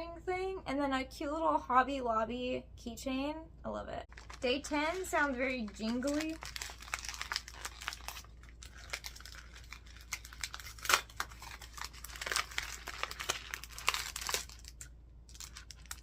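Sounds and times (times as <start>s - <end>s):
gift wrapping crinkling and tearing: 4.1s - 16.0s.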